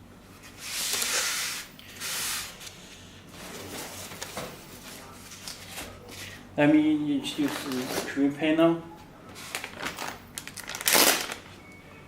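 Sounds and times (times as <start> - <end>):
packaging rustling: 7.4 - 8.2, 9.3 - 11.5.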